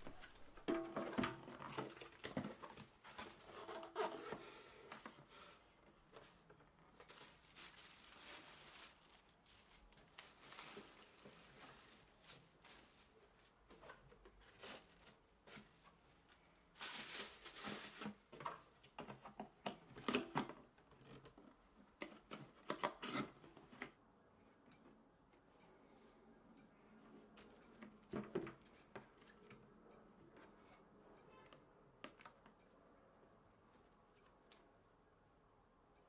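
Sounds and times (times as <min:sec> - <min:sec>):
paper and cardboard rustling: 0:00.0 - 0:21.3.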